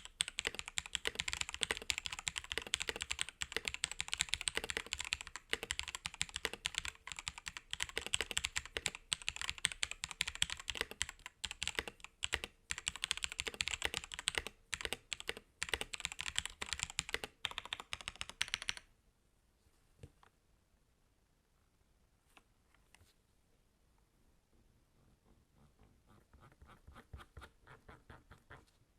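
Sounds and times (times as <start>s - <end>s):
mechanical keyboard typing: 0.0s - 18.9s.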